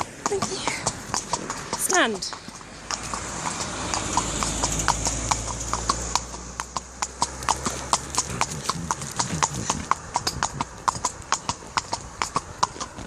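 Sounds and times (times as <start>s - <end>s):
horse hooves clip-clopping: 0.0s - 13.0s
wind on microphone: 8.3s - 11.3s.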